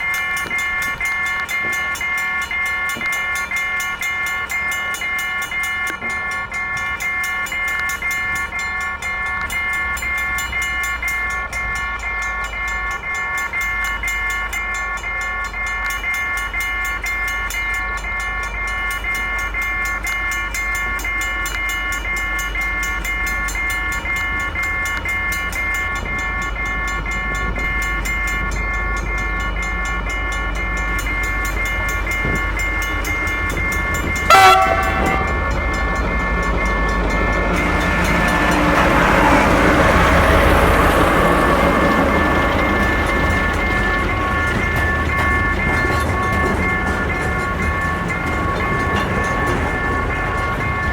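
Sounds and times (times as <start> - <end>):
locomotive engine rumble: 0.0 - 50.9
pulsing multi-tone warning signal: 0.0 - 50.9
train wheel noise: 0.0 - 50.9
train horn blast: 30.6 - 50.9.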